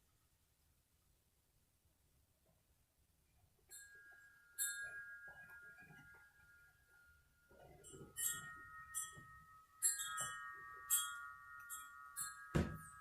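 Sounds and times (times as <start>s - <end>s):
bell-like chime tones: 3.7s - 13.0s.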